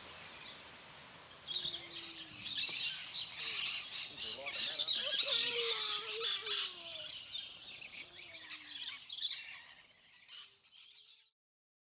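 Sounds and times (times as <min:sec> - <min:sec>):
parrots chattering and screeching: 0:04.5 - 0:10.9.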